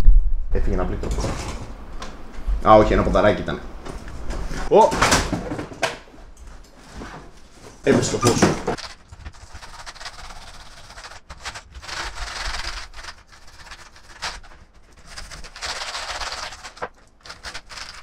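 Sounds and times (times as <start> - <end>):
brush scrubbing a keyboard: 8.8 - 18.0.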